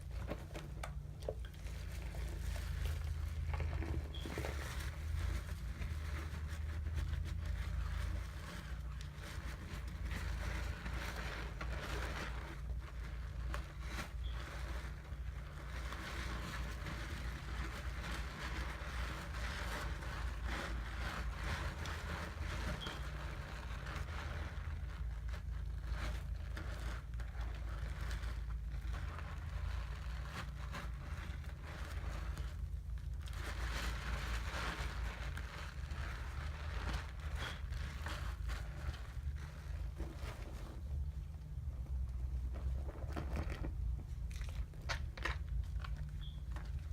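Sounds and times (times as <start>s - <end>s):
soap lathering with a loofah: 1.0s - 9.2s.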